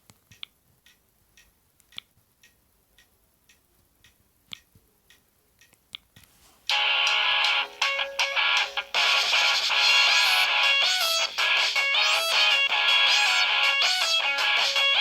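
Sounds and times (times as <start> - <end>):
faint ticking clicks: 0.0 - 6.3.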